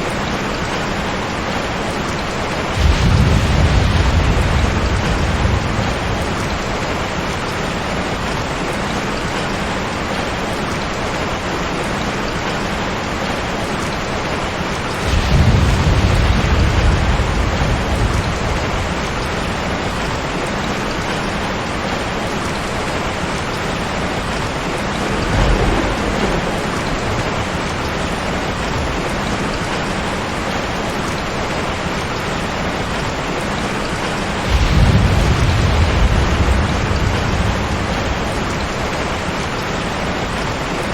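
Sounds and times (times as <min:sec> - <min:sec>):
dense rain hiss: 0:00.0 - 0:40.9
deep rolls of thunder: 0:02.4 - 0:08.6, 0:14.3 - 0:22.0, 0:23.6 - 0:32.1, 0:34.0 - 0:40.4.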